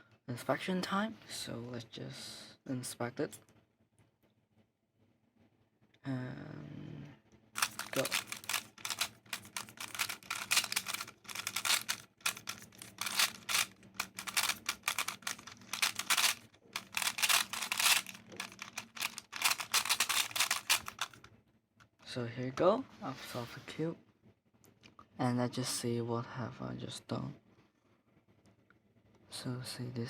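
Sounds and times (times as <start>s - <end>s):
plastic speed cube clicks: 7.6s - 21.2s.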